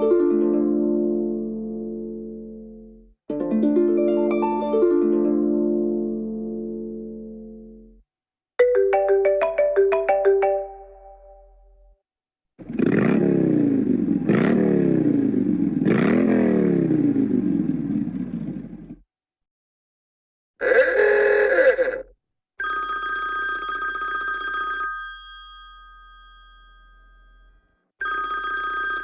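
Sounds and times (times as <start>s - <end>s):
plucked ringtone melody: 3.4s - 7.9s, 8.6s - 11.8s
revving engine ringtone: 12.6s - 18.8s.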